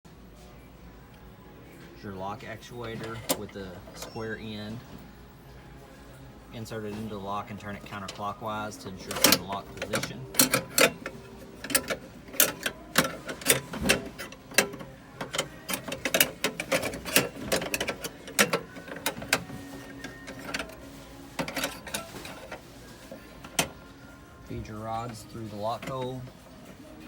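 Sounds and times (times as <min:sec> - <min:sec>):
metal lock hardware clicking: 0:09.1 - 0:19.5.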